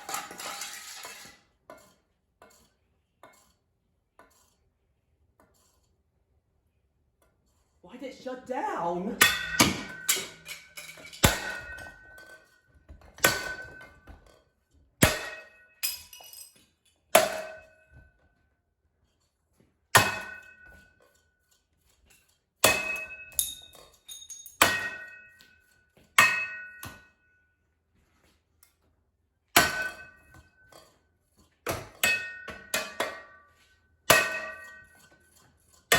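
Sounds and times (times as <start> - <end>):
ceiling fan struck with metallic ring: 9.2 - 10.5.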